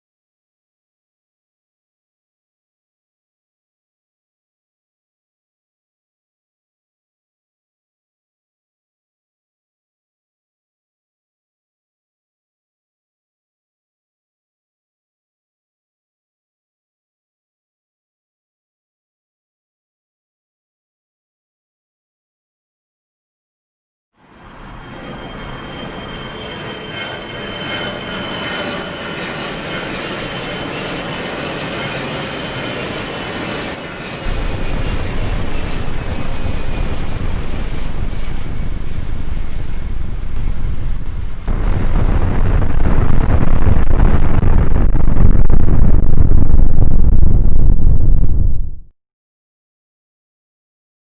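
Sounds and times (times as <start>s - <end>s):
faint tones sliding downward: 24.3s - 33.2s
heavy low rumble: 34.2s - 48.9s.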